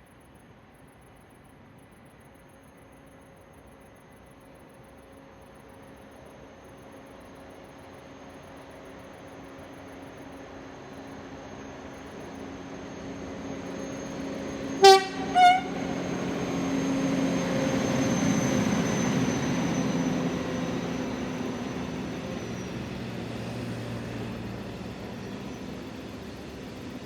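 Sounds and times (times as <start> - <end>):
train rumbling past: 7.5 - 27.0
train horn blasts: 14.6 - 16.8.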